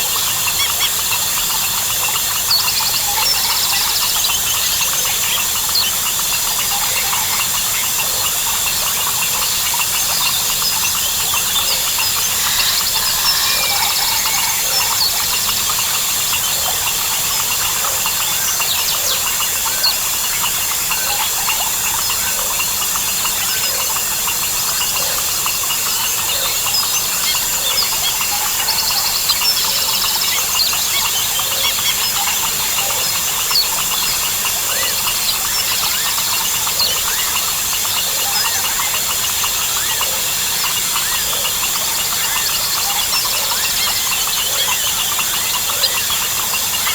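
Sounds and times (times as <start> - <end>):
frogs calling: 0.0 - 46.9
insects trilling: 0.0 - 46.9
bird chirps: 2.1 - 20.5.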